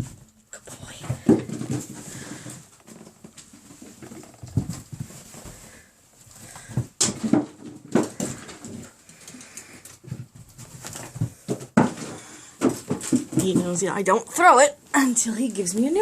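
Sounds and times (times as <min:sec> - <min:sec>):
puppy paws scampering on floor: 0:00.0 - 0:14.5
knocks and bumps: 0:06.5 - 0:09.0, 0:10.0 - 0:14.5.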